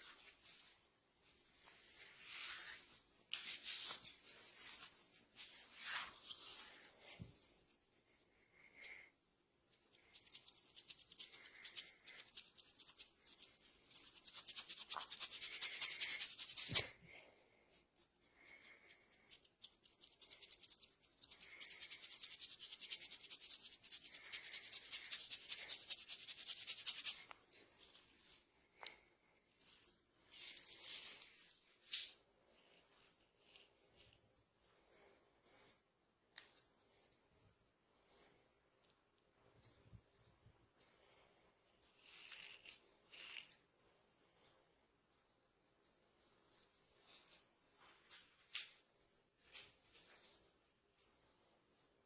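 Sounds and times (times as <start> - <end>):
hands rubbing hair: 0.0 - 9.0, 9.6 - 17.0, 18.0 - 28.4, 29.6 - 32.2.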